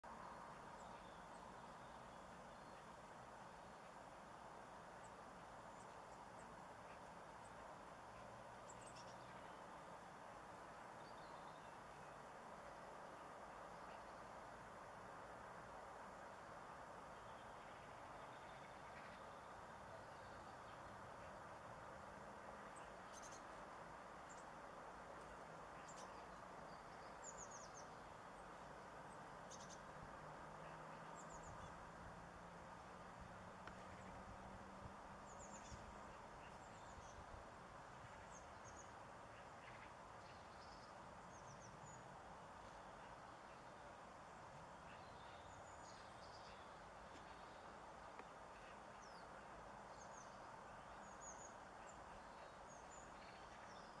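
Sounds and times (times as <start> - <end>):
steady low hiss: 0.0 - 54.0
small birds chirping: 5.0 - 9.7, 22.6 - 31.9, 32.6 - 54.0.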